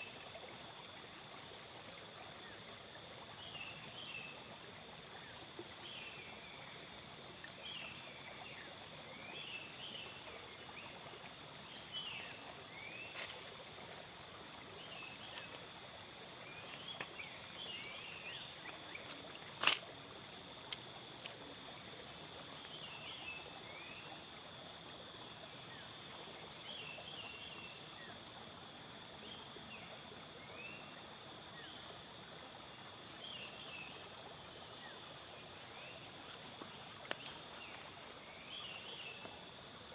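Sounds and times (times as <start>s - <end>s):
crickets chirping: 0.0s - 39.9s
insects droning: 0.0s - 39.9s.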